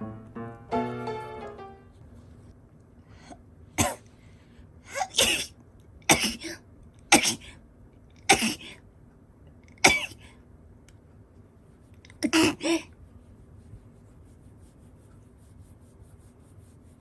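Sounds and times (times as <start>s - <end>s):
dog sneezing: 5.0s - 5.5s, 6.1s - 6.5s, 7.1s - 7.4s, 8.3s - 8.7s, 9.8s - 10.2s.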